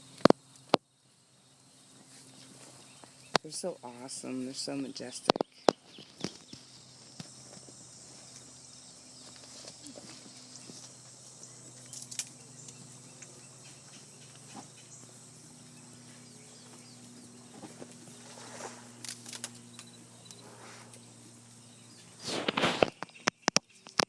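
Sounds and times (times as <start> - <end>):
vehicle engine idling: 0.0 - 19.0.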